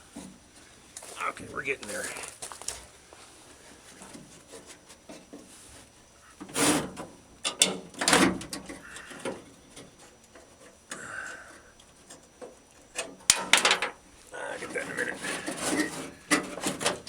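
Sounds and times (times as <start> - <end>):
metal parts scraping and sliding: 14.8 - 17.0.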